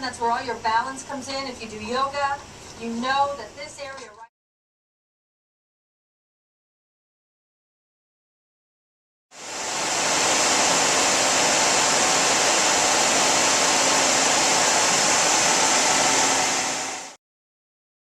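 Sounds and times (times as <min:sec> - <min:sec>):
loud static hiss: 0:09.4 - 0:17.2.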